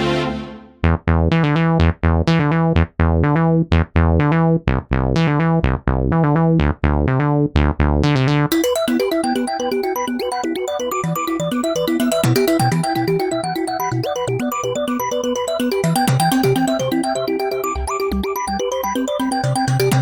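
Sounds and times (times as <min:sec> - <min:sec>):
fast synthesizer arpeggio: 0:08.5 - 0:20.0.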